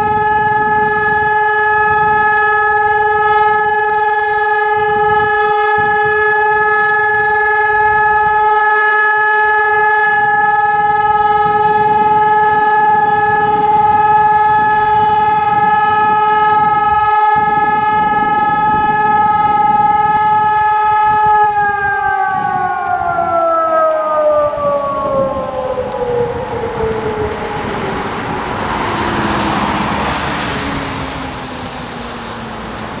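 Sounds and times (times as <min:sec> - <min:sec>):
electronic sirens steady tone: 0:00.0 - 0:33.0
motor siren winding down: 0:00.0 - 0:33.0
rushing noise: 0:25.3 - 0:33.0.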